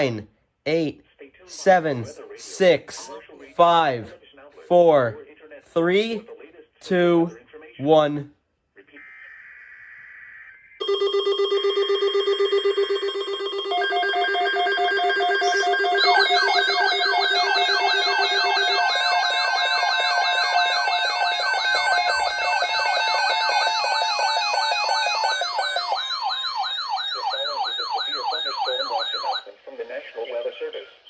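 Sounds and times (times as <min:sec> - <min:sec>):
pulsing alarm tones: 0:09.0 - 0:29.4
rising siren sweep: 0:12.2 - 0:29.4.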